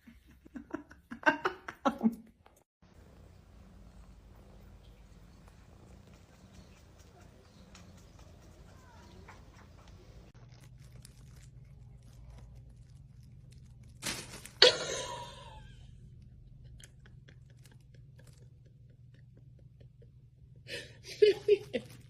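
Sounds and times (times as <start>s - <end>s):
faint clicks and crunching: 2.5s - 15.3s, 16.0s - 19.6s, 21.4s - 22.0s.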